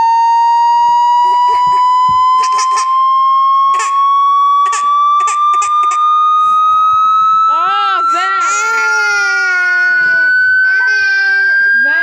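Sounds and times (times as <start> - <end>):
loud high tone rising in pitch: 0.0 - 12.0
short noisy bursts: 3.7 - 6.7.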